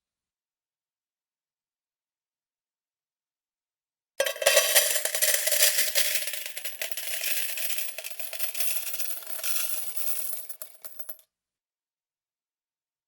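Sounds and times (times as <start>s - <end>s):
metal coins clattering and jingling: 4.2s - 11.2s.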